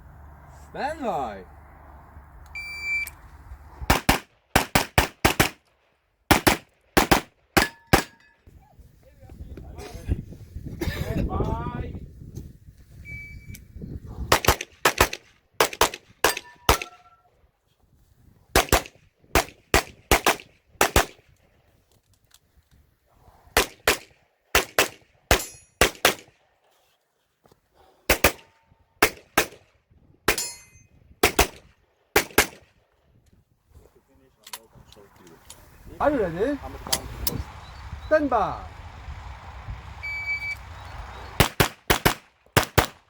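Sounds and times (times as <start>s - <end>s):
shot timer beep: 2.6s - 3.1s
pistol shots: 3.9s - 5.6s, 6.3s - 8.2s, 14.3s - 17.0s, 18.6s - 21.2s, 23.6s - 26.3s, 28.1s - 29.6s, 31.2s - 32.6s, 41.4s - 43.0s
metallic ring of steel targets: 7.6s - 8.5s, 16.3s - 17.3s, 25.4s - 25.8s, 30.3s - 31.0s.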